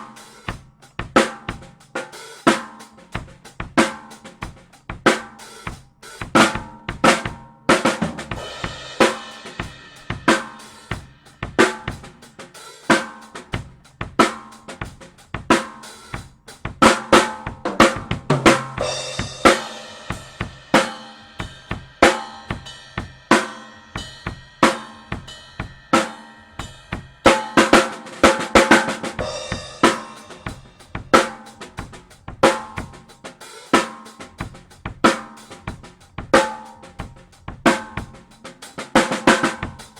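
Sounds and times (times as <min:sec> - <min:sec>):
drum kit groove: 0:00.0 - 0:39.9.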